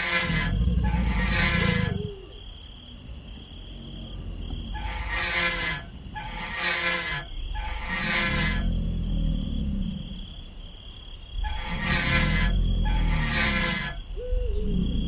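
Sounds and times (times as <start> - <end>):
shrill metallic screeches: 0.0 - 2.2, 4.7 - 9.6, 11.4 - 14.3
low rumble: 0.0 - 15.0.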